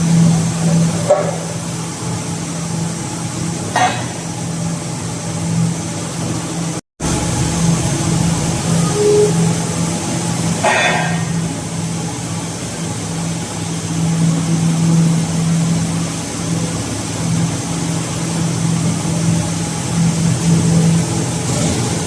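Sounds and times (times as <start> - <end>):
hydraulic baler humming: 5.1 - 19.3.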